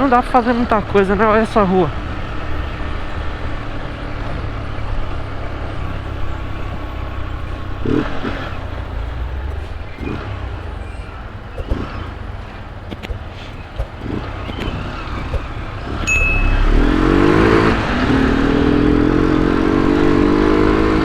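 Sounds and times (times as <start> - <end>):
motorcycle engine running: 0.0 - 21.0.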